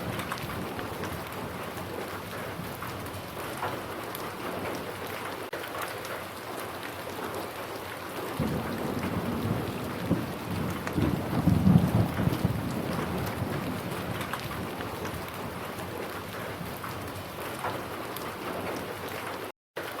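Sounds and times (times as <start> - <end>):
low rumble of thunder: 0.0 - 4.9, 8.3 - 18.9
steady rain falling: 0.0 - 20.0.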